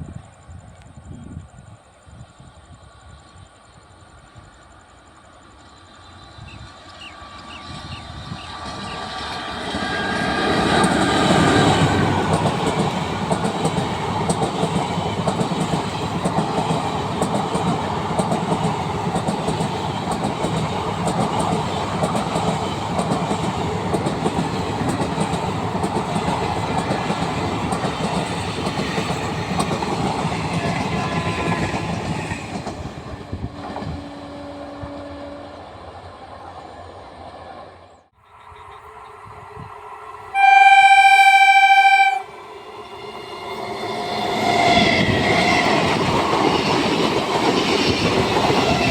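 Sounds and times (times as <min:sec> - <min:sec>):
train passing at speed: 0:00.0 - 0:48.9
wheels clicking over rail joints: 0:08.2 - 0:34.1.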